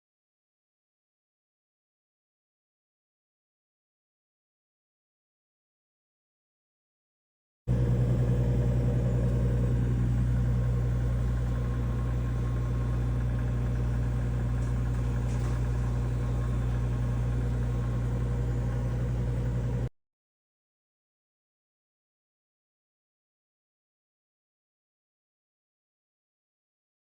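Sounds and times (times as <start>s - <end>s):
fan whirring: 7.7s - 19.9s
microwave oven humming: 7.7s - 19.9s.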